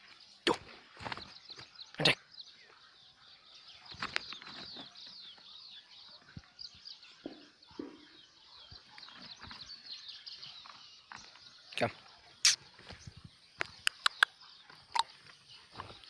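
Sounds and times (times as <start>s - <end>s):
small birds chirping: 0.0s - 16.0s
sharp clicks: 13.6s - 14.3s.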